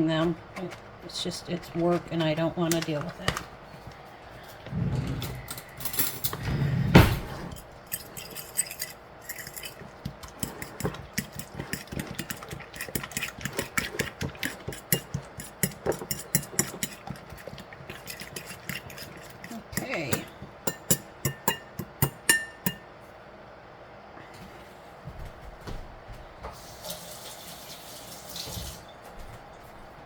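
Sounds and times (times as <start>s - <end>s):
utensil tapping against a dish: 10.0s - 22.8s.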